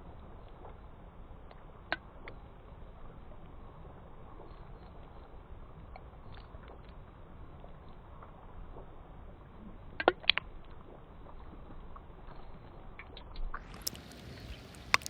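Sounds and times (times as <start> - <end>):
ice cracking and pinging: 9.8 - 15.0.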